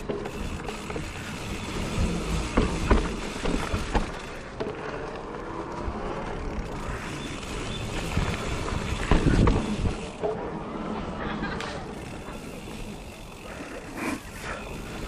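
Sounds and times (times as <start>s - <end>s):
bike rattling on dirt trail: 0.0s - 15.0s
sharp knocks over bumps: 2.4s - 4.7s.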